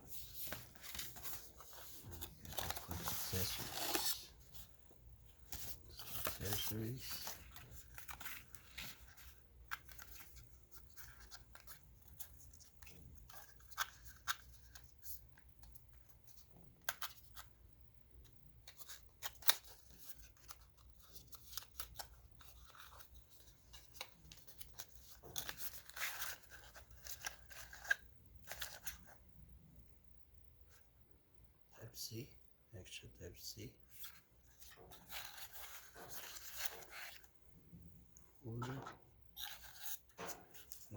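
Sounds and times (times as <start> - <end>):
plastic and cardboard rustling: 0.0 - 17.4, 18.7 - 29.2, 33.9 - 37.4.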